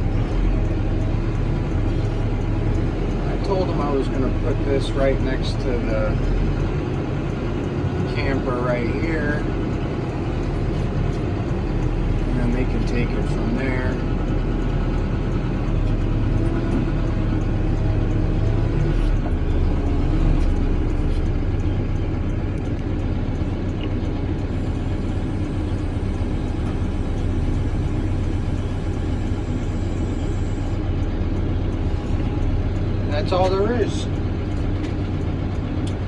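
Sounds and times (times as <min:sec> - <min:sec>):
diesel engine running under load: 0:00.0 - 0:36.0.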